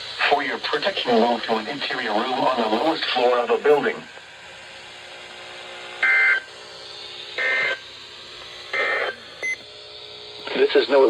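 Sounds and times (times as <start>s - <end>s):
harsh buzzing data bursts: 7.2s - 7.9s.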